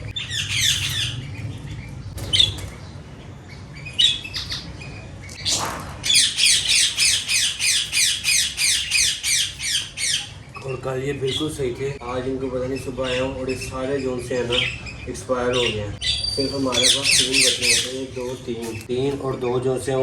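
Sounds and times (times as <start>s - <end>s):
budgerigars chirping: 0.0s - 19.8s
bird squawking harshly: 5.4s - 10.5s, 12.8s - 18.2s.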